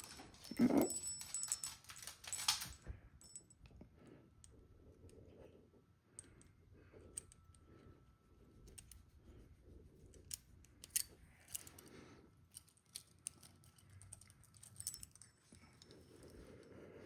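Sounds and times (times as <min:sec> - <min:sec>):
handcuff key clicking and rattling: 0:00.0 - 0:03.4, 0:10.1 - 0:11.9, 0:12.5 - 0:16.4.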